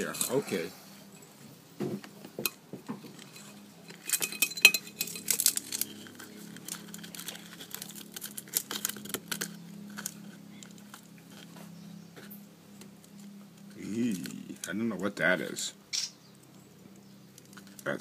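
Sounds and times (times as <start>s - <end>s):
steady low hum: 0.0s - 18.0s
hard pieces clinking against a dish: 3.2s - 6.2s.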